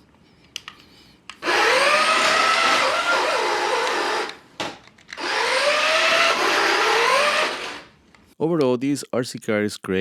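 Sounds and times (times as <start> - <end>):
toy car electric motor whining: 1.4 - 4.4, 5.1 - 7.9.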